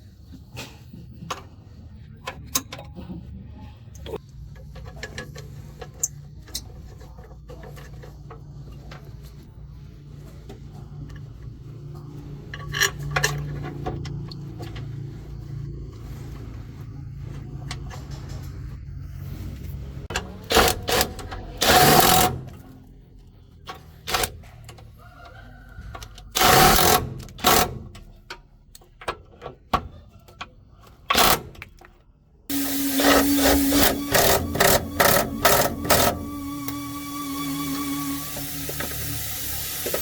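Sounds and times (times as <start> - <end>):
engine humming: 32.5 - 40.0.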